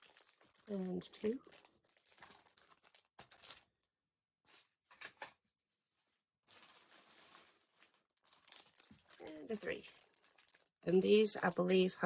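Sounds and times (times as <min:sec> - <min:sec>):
packaging rustling: 0:00.0 - 0:03.8, 0:06.4 - 0:10.8.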